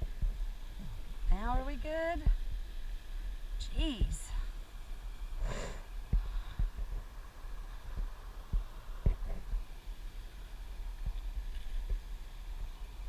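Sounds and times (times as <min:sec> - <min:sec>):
dull thumps on microphone: 0:08.0 - 0:09.5.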